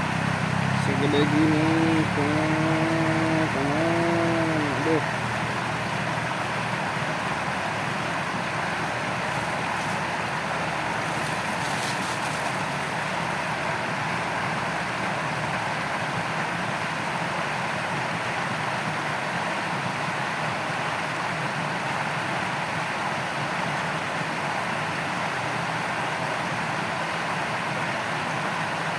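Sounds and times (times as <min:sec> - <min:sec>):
stream water flowing over stones: 0:04.2 - 0:15.7.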